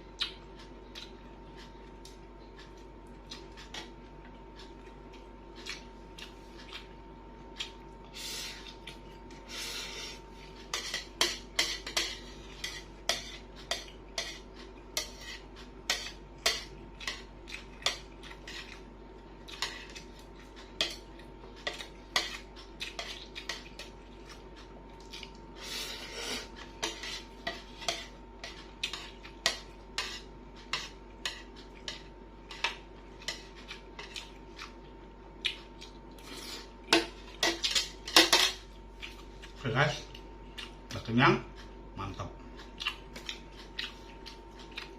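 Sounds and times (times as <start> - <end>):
cutlery clinking on plate: 36.9 - 38.6.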